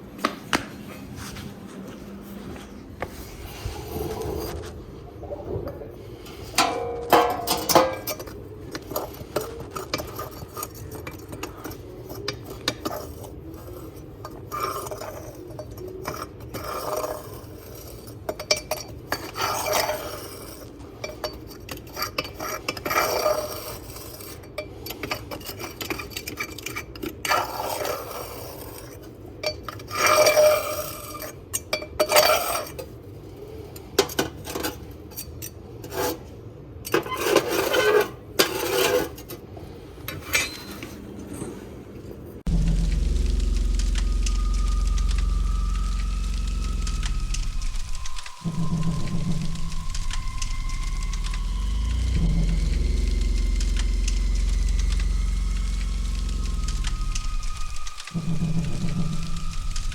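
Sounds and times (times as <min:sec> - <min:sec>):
metal scraping ash: 0:37.0 - 0:39.4.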